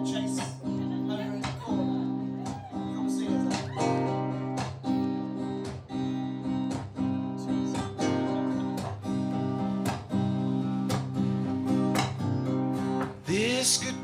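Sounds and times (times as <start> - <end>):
guitar strumming chords: 0.0 - 14.0.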